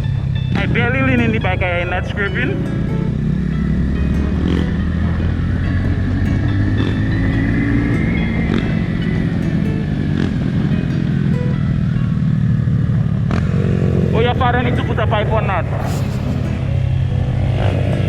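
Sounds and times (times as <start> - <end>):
motorcycle engine running: 0.0 - 18.0
thin high whine: 14.4 - 17.9.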